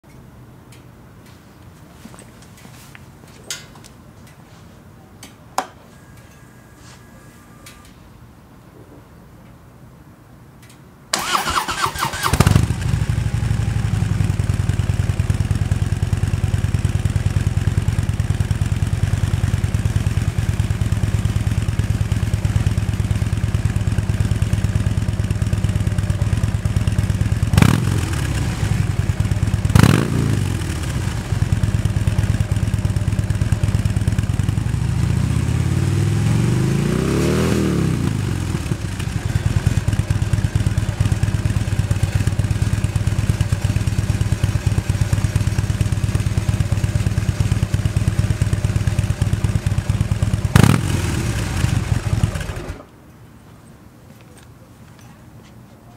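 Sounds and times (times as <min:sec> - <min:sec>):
starter motor cranking: 0:11.2 - 0:12.6
motorcycle engine idling and revving: 0:11.2 - 0:52.9.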